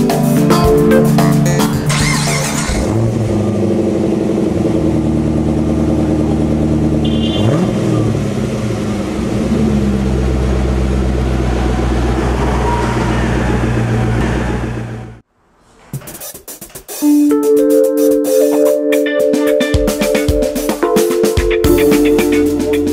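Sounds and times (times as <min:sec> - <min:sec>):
car engine idling and revving: 0:00.0 - 0:15.3.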